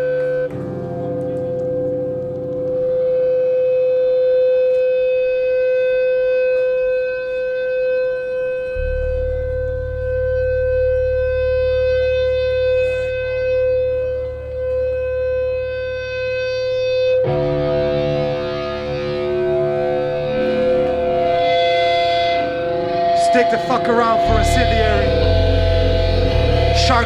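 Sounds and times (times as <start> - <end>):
electric guitar feedback howl: 17.4 - 27.0
low bass drone: 23.2 - 27.0.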